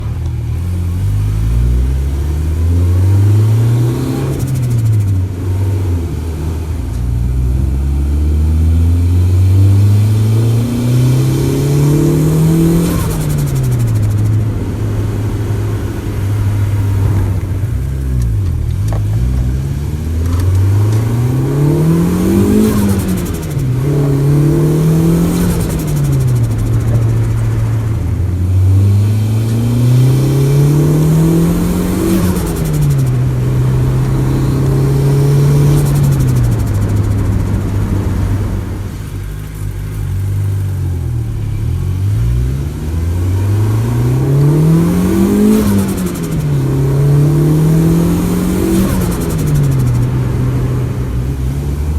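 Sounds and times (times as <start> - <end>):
car engine revving: 0.0 - 51.9
turbo flutter chattering: 31.8 - 40.7.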